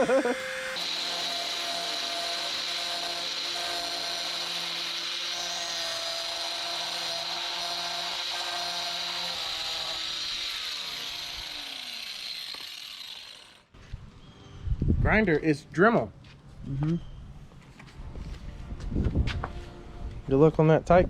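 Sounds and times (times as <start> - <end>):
rotary power tool whining: 0.0 - 13.8.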